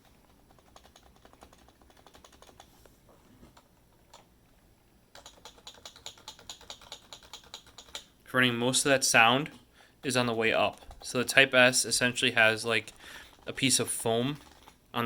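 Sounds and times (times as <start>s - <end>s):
keyboard keys clacking: 0.0s - 2.6s, 5.1s - 8.0s
keyboard typing: 0.0s - 2.7s, 5.1s - 8.2s, 12.8s - 14.8s.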